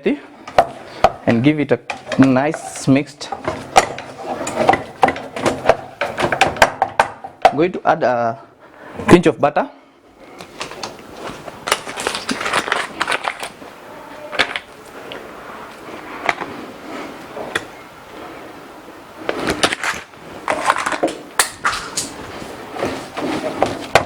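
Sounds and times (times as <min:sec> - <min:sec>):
utensil scraping and squishing in bowl: 0:01.9 - 0:06.7.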